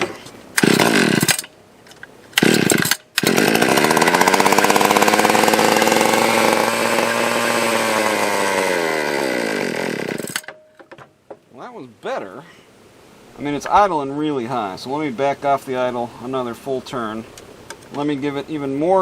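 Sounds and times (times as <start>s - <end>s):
chainsaw engine starting and idling: 0.0s - 1.5s, 2.3s - 10.6s.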